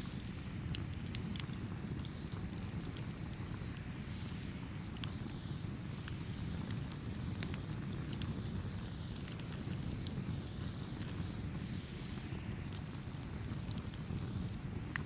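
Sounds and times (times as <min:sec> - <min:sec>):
campfire rumbling: 0:00.0 - 0:15.0
wood crackling and popping: 0:00.0 - 0:15.0.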